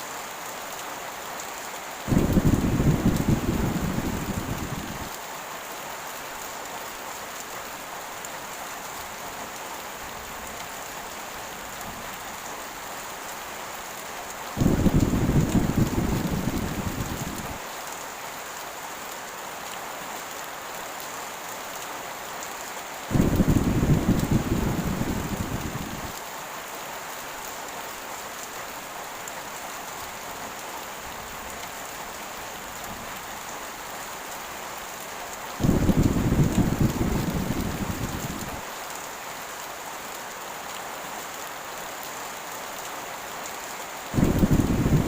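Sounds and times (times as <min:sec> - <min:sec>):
heavy rain: 0:00.0 - 0:45.0
rolling thunder: 0:02.1 - 0:05.1, 0:14.6 - 0:17.6, 0:23.1 - 0:26.1, 0:35.6 - 0:38.6, 0:44.2 - 0:45.0.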